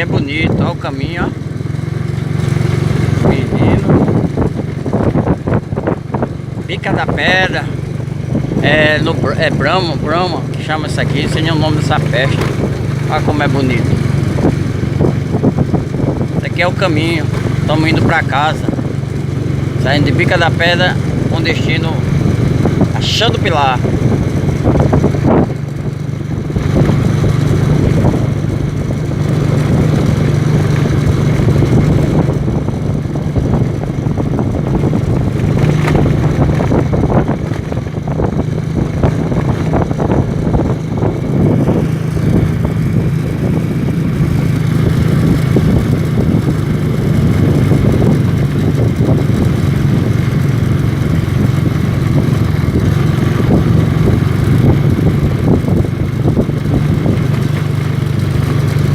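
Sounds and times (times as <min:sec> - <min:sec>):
vehicle engine cruising: 0:00.0 - 0:58.9
short rattles and clatter: 0:10.9 - 0:15.5, 0:17.0 - 0:18.0, 0:34.4 - 0:40.9.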